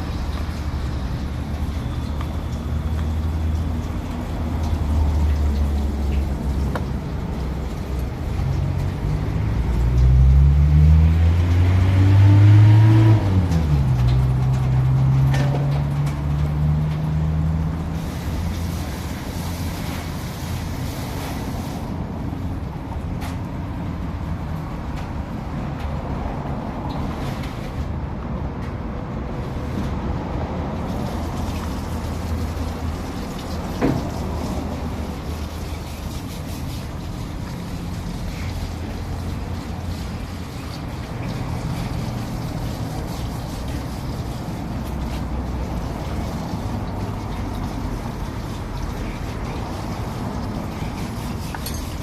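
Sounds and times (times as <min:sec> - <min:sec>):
engine revving: 0:09.0 - 0:17.6.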